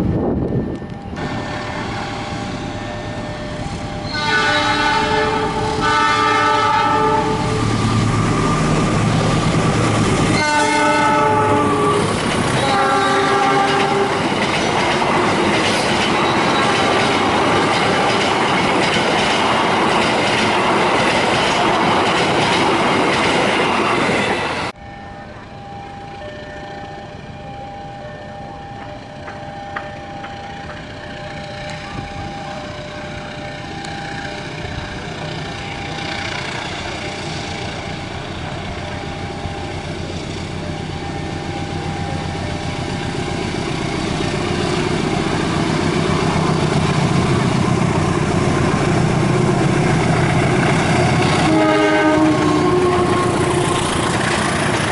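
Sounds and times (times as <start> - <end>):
diesel locomotive horn: 0.2 - 14.4, 41.8 - 54.8
steady two-note tone: 24.8 - 36.0.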